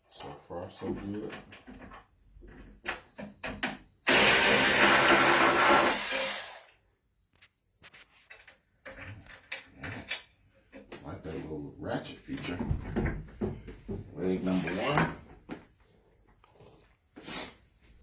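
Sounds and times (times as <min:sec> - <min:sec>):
electric ratchet wrench motor: 0:04.1 - 0:06.9.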